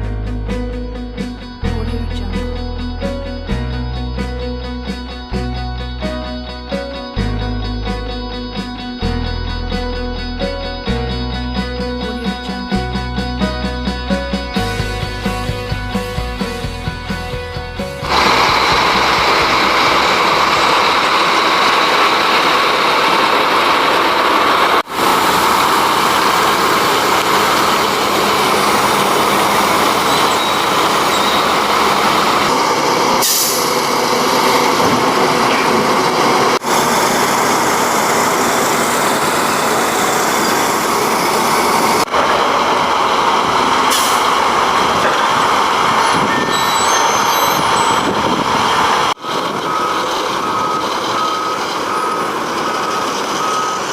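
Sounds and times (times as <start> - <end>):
heavy diesel machinery roaring: 10.8 - 53.9.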